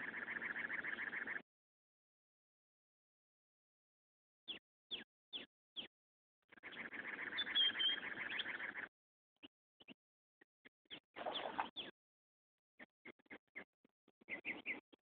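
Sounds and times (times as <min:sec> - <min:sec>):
rapid bird twittering: 0:00.0 - 0:01.4, 0:04.5 - 0:05.9, 0:06.5 - 0:10.0, 0:10.9 - 0:11.9, 0:13.0 - 0:14.9
small birds chirping: 0:00.0 - 0:01.4, 0:04.5 - 0:05.9, 0:06.5 - 0:10.0, 0:10.8 - 0:12.0, 0:12.8 - 0:15.0.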